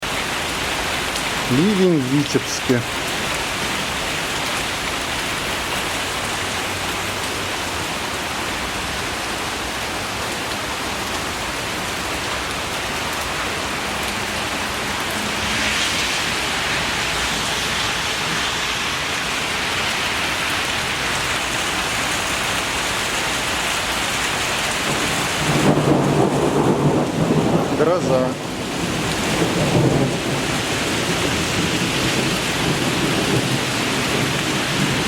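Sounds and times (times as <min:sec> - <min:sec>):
heavy rain splashing: 0:00.0 - 0:35.0.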